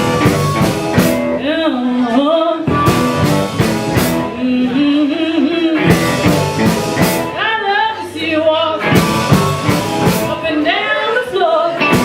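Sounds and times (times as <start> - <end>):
drum hits: 0.0 - 1.4, 2.7 - 4.4, 5.8 - 7.4, 8.8 - 10.4, 11.8 - 12.0
electric guitar: 0.0 - 8.0, 8.8 - 10.7, 11.6 - 12.0
person singing: 4.2 - 6.4.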